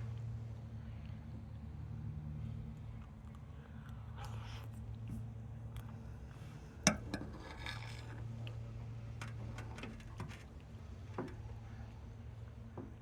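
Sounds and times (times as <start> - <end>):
utensil scraping a bowl: 6.9 - 8.4.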